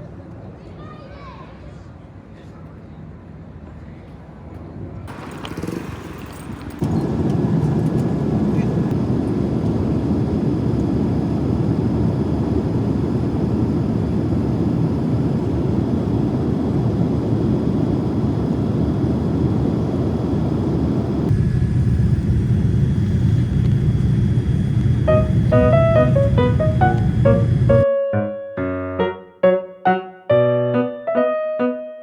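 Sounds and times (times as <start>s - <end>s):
moving vehicle rumbling: 5.1s - 10.2s, 22.2s - 27.8s.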